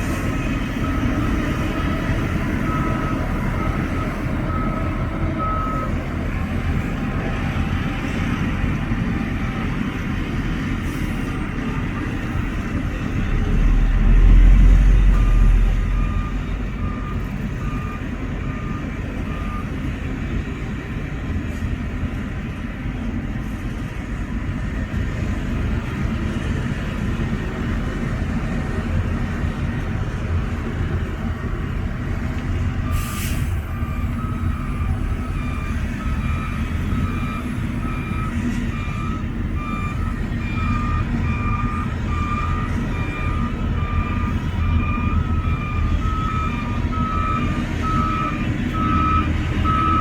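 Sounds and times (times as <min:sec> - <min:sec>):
diesel earthmoving machinery running: 0:00.0 - 0:50.0
reversing alarm beeping: 0:00.1 - 0:10.0, 0:10.9 - 0:20.0, 0:32.6 - 0:50.0.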